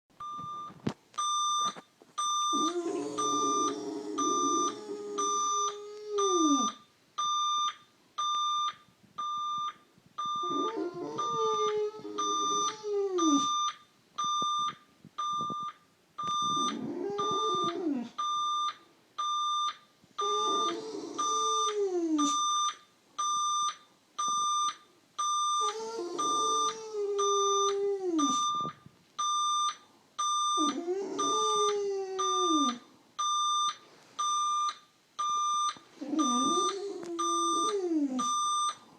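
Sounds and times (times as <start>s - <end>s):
alarm clock beeping: 0.2s - 38.9s
dog howling: 2.6s - 6.8s, 10.5s - 13.5s, 20.2s - 22.4s, 25.6s - 28.4s, 30.6s - 32.8s, 36.0s - 38.3s.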